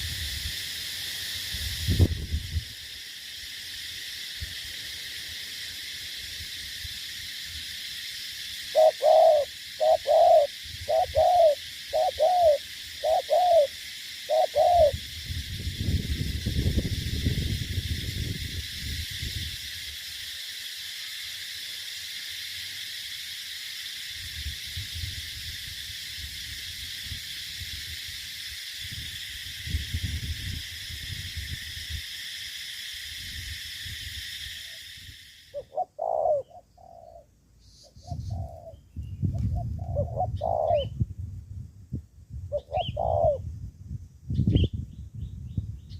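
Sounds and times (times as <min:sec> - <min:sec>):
steady high hiss: 0:00.0 - 0:44.4
dove cooing: 0:08.7 - 0:13.7, 0:14.3 - 0:15.0, 0:35.5 - 0:37.3, 0:38.0 - 0:38.8, 0:39.5 - 0:40.9, 0:42.5 - 0:43.4.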